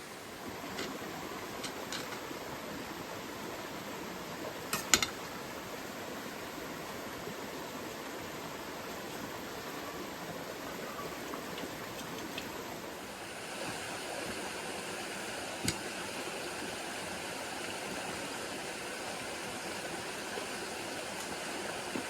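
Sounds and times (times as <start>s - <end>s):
rushing water: 0.0s - 22.0s.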